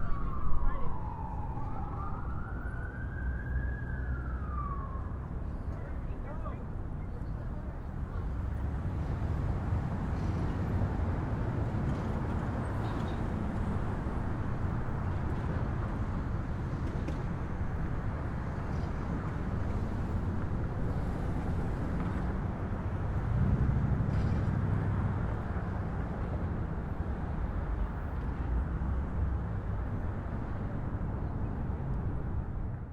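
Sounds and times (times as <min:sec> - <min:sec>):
traffic rumble: 0:00.0 - 0:32.9.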